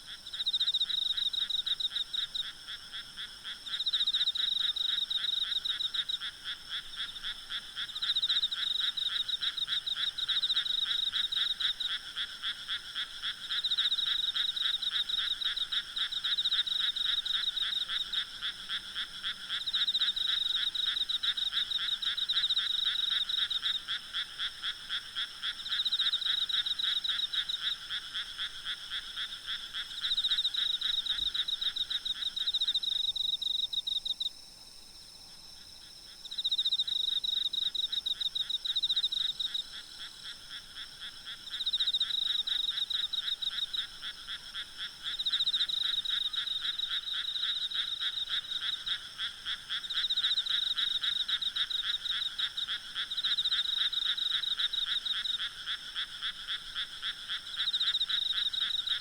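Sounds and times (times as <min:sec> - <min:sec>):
frogs croaking: 0:00.0 - 0:59.0
insects trilling: 0:00.1 - 0:59.0.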